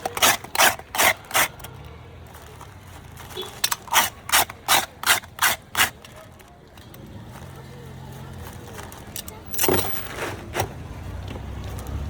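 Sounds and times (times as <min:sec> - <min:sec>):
ice scraping strokes: 0:00.0 - 0:01.6, 0:03.4 - 0:06.0, 0:09.5 - 0:10.8.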